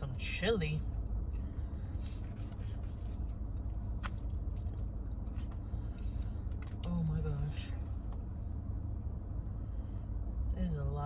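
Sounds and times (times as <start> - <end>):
steady low rumble: 0.0 - 11.0
chewing and wet squishing: 2.2 - 6.9.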